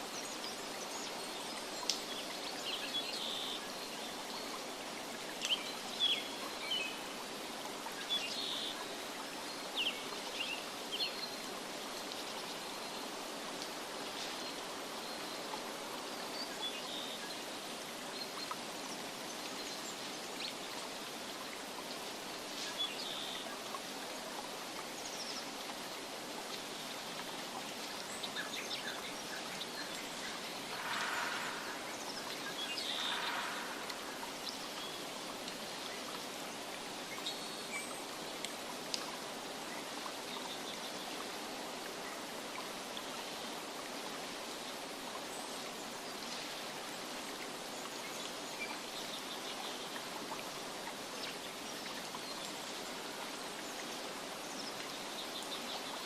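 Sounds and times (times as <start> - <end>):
rain: 0.0 - 56.0
stream rushing: 0.0 - 56.0
faint bird chirps: 28.8 - 35.0.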